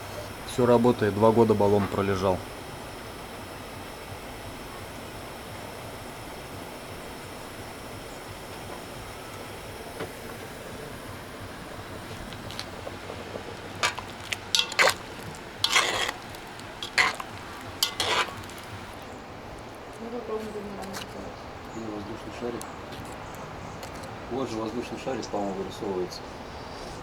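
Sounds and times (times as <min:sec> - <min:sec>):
food frying in a pan: 0:00.0 - 0:19.1
utensil scraping a pan: 0:12.1 - 0:19.0.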